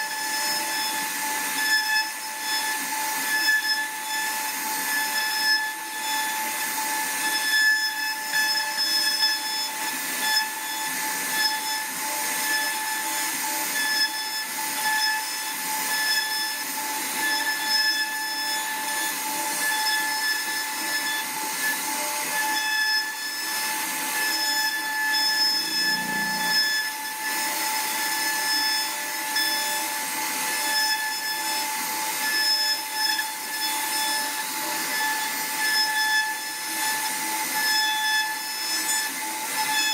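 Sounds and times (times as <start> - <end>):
router spindle whining: 0.0 - 39.9
cutter hissing in wood: 16.6 - 30.7.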